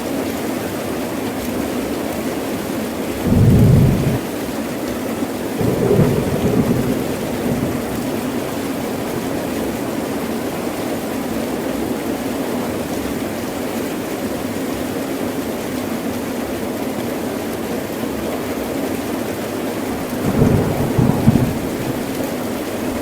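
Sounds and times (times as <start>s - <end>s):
heavy rain falling: 0.2s - 23.0s
thunder rumble: 3.2s - 4.3s, 5.6s - 10.2s, 20.1s - 23.0s.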